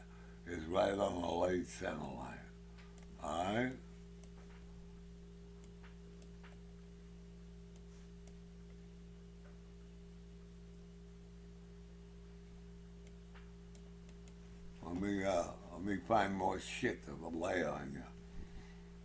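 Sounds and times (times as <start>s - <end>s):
low electrical hum: 0.0s - 19.0s
computer mouse clicks: 2.8s - 3.2s, 5.6s - 6.6s, 13.0s - 14.4s.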